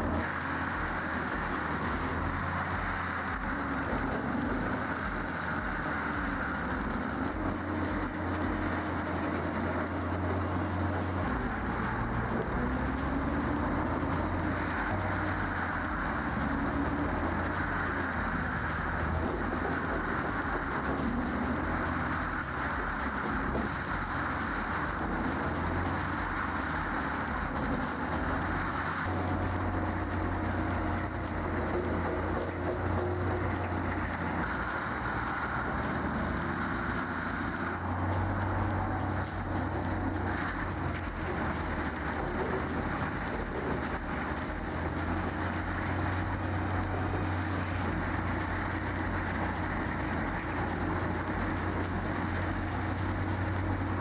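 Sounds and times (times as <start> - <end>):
faint steady whine: 0.0 - 54.0
heavy machinery engine drone: 0.0 - 54.0.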